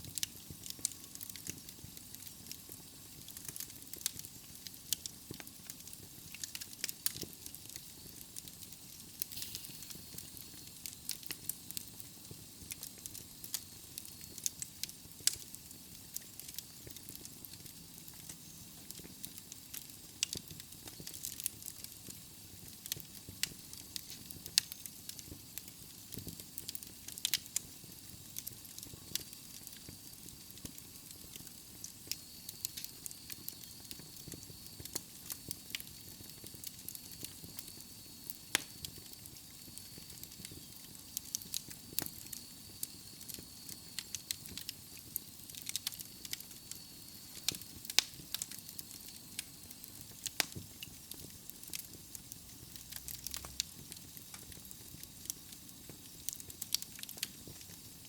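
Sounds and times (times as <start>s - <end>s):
flames hissing: 0.0s - 58.0s
logs crackling and popping: 0.1s - 58.0s.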